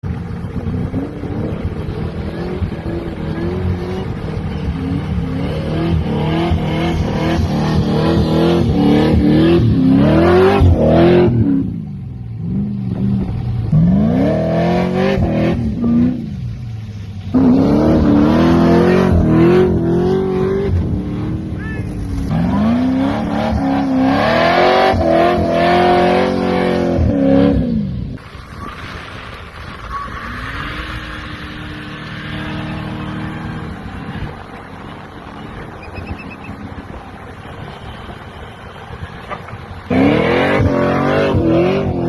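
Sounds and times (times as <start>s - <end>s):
engine revving hard: 4.8s - 11.7s, 22.2s - 27.8s, 39.9s - 42.0s.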